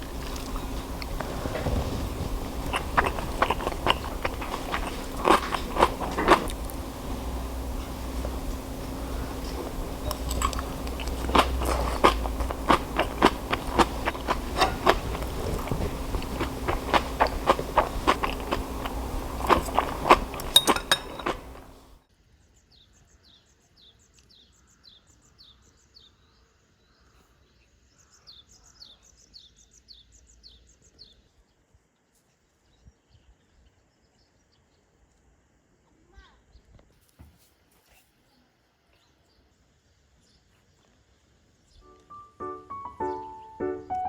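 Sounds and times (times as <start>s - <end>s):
crunchy eating clicks and crackles: 0.0s - 22.0s
steady low hum: 0.0s - 22.0s
small bird chirping: 41.7s - 44.0s.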